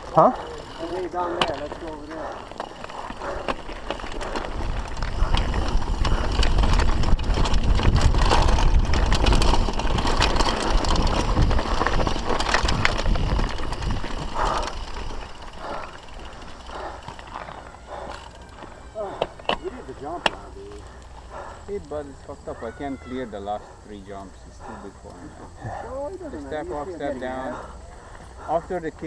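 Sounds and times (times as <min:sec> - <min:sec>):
wind buffeting microphone: 0:00.0 - 0:22.0
bike parts rattling and clicking: 0:00.0 - 0:29.0.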